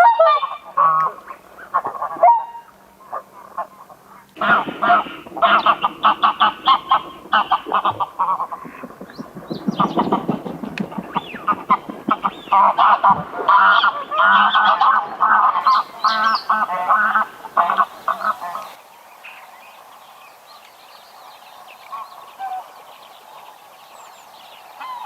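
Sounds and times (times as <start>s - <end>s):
geese honking: 0.0s - 18.8s.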